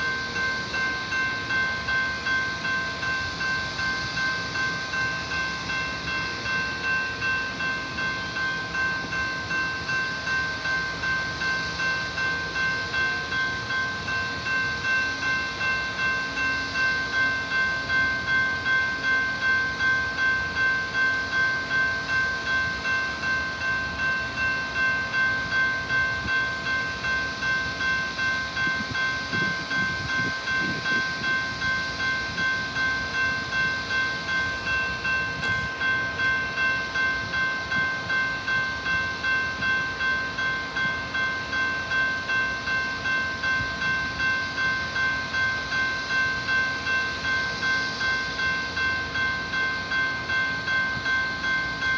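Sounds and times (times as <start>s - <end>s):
crossing warning bell ringing: 0.0s - 51.9s.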